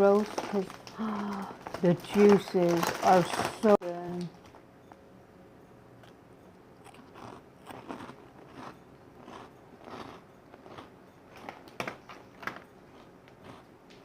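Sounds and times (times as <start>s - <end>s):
wet chewing: 6.8s - 11.7s.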